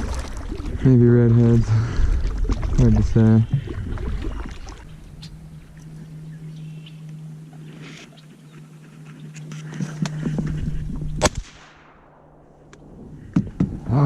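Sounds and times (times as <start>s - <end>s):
water splashing: 0.0s - 6.1s
sharp crack: 11.2s - 12.9s.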